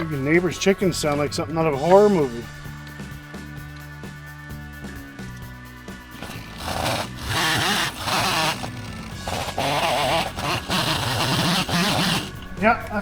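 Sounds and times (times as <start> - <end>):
background music: 0.0 - 13.0.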